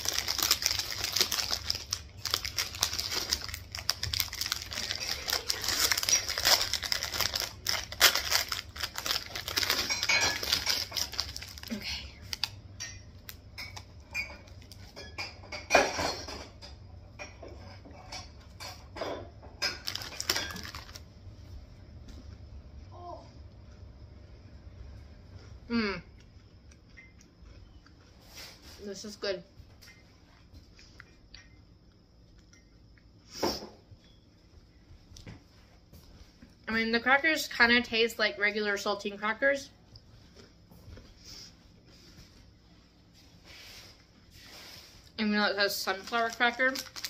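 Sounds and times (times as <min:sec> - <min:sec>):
plastic wrapper crinkling: 0:00.0 - 0:12.6, 0:19.7 - 0:21.1, 0:45.5 - 0:47.0.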